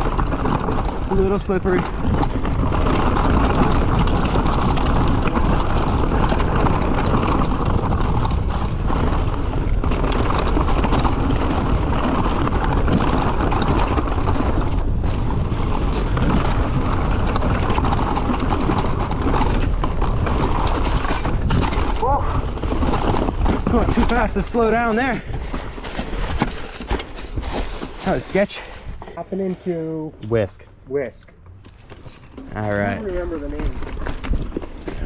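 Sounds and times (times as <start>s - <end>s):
wind on microphone: 0.0s - 28.0s
bike rattling and clattering: 0.0s - 29.3s, 31.5s - 35.0s
tyres on dirt and rock: 0.0s - 35.0s.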